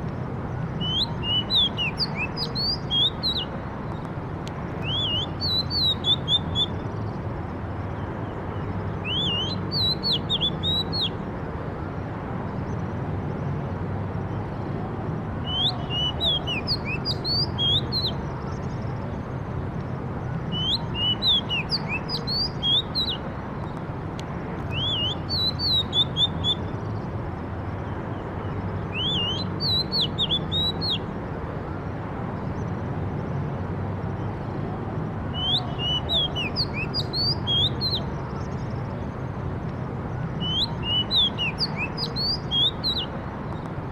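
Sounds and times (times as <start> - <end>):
songbird high chirps: 0.6 - 4.1, 4.8 - 11.2, 15.4 - 19.2, 20.2 - 23.9, 24.6 - 27.1, 27.8 - 31.1, 35.3 - 39.2, 40.0 - 43.8.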